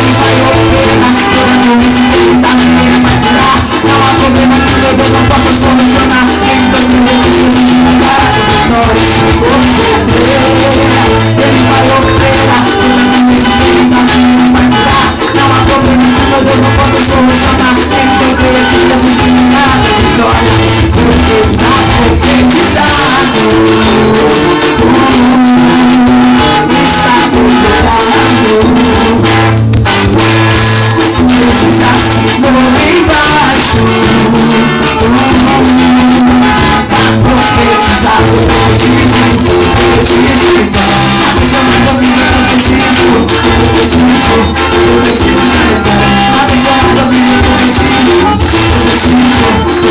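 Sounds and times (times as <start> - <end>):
band playing upbeat gospel song: 0.0 - 49.9
shaken hand percussion: 0.0 - 49.9.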